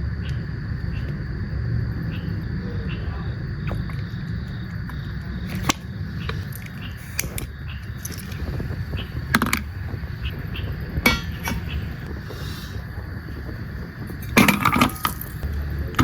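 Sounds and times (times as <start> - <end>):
steady low rumble: 0.0 - 16.0
sharp clicks and knocks: 9.3 - 9.7.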